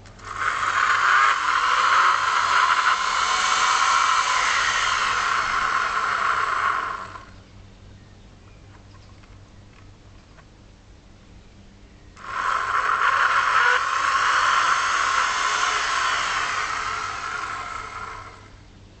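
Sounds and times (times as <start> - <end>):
vacuum cleaner motor rough rushing: 0.2 - 7.4, 12.2 - 18.6.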